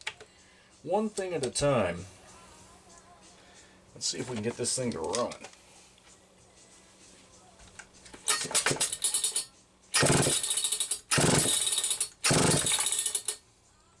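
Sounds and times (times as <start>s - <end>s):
chainsaw recoil starter pulls: 8.2s - 13.4s.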